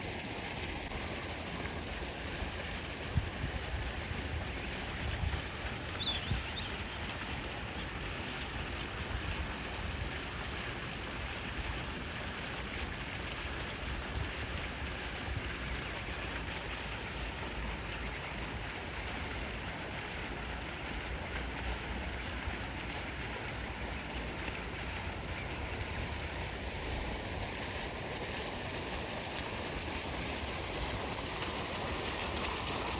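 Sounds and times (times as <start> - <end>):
wind buffeting microphone: 2.5 - 7.9
faint high chirp: 6.0 - 6.7.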